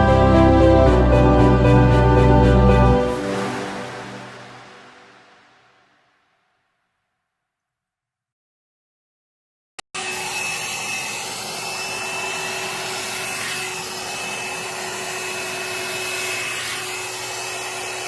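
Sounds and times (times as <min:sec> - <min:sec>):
hot air brush blowing and whining: 0:10.0 - 0:18.0.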